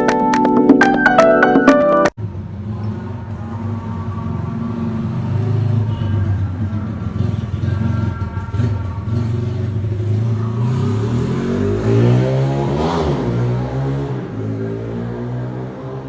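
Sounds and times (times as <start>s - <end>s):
vehicle engine running: 2.2s - 13.0s.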